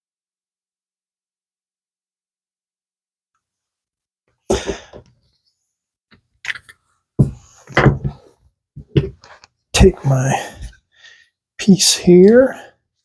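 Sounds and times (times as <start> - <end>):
small objects knocking on workbench: 6.5 - 9.4.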